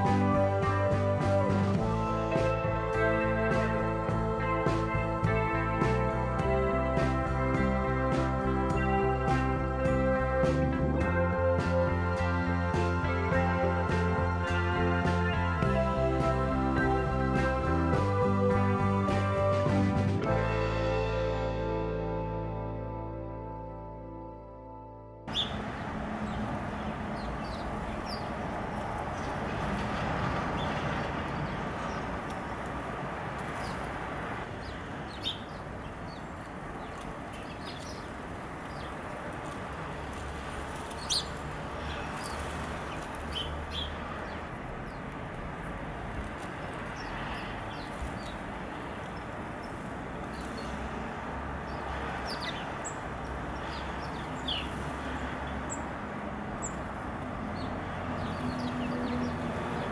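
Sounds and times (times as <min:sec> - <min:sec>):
small birds chirping: 0:25.3 - 0:29.6, 0:30.5 - 0:32.7, 0:33.4 - 0:39.6, 0:40.7 - 0:45.2, 0:46.2 - 0:50.9, 0:51.5 - 0:56.0, 0:56.6 - 0:56.9, 0:57.5 - 0:59.9.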